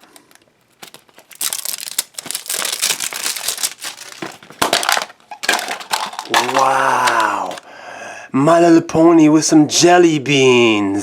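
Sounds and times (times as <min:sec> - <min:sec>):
plastic candy packaging crinkling: 0:00.0 - 0:07.7.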